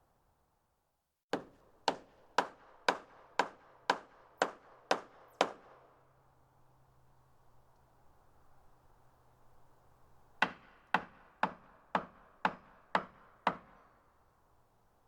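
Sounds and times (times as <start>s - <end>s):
hammer striking wood: 1.3s - 5.8s, 10.4s - 14.0s.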